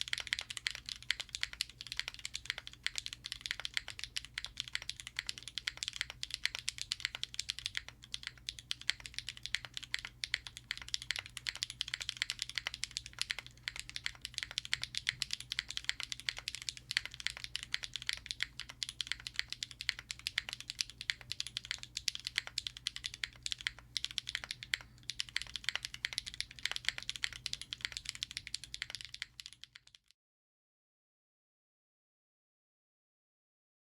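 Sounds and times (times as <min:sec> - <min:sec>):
mechanical keyboard typing: 0:00.0 - 0:30.1.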